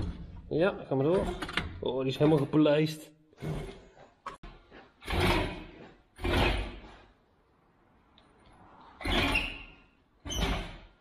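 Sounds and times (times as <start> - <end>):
metal scraping and sliding: 3.4 - 7.2.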